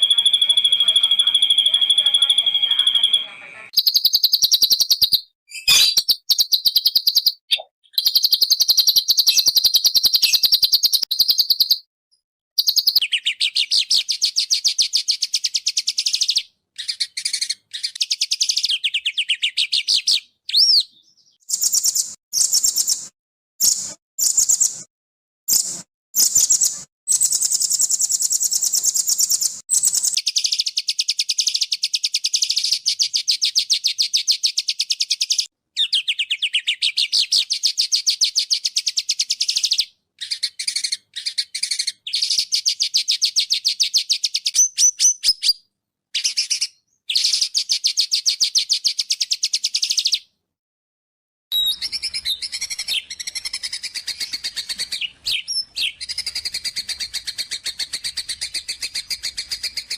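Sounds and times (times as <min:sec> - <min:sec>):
songbirds trilling: 0:00.0 - 0:04.6.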